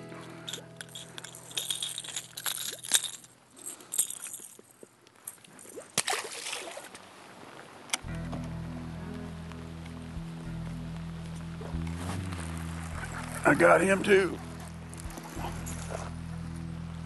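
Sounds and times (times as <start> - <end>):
light clicks and clinks: 0.2 - 5.7
water splashing and sloshing: 0.5 - 8.1, 14.3 - 16.6.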